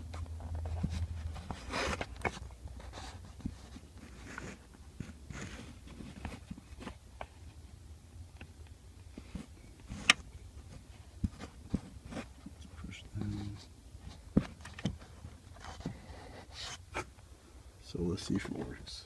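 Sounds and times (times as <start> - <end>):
plastic clicks and rustling: 14.4 - 15.8.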